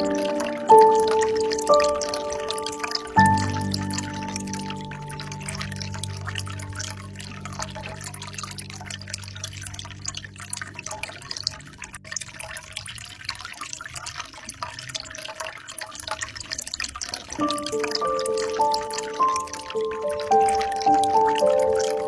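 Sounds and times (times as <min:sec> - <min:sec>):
higher music notes: 0:00.0 - 0:10.7
soft low held music tones: 0:00.0 - 0:13.2
water trickling into a pool: 0:00.0 - 0:22.0.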